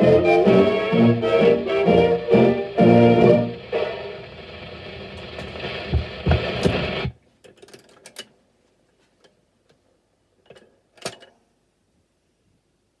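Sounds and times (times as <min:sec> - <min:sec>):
jazz band record on gramophone: 0:00.0 - 0:07.2.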